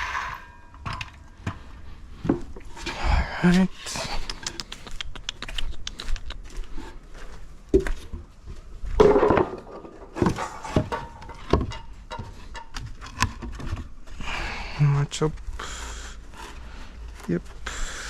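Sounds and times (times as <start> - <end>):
wooden boards knocking: 9.0 - 12.7.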